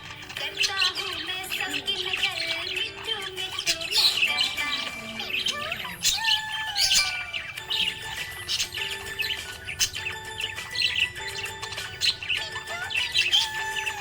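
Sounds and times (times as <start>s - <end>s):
budgerigar chirping and warbling: 0.0s - 14.0s.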